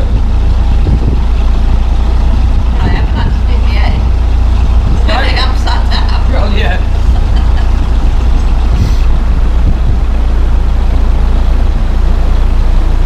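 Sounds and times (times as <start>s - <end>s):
boat diesel engine rumbling: 0.0s - 13.0s
hiss: 8.8s - 9.1s.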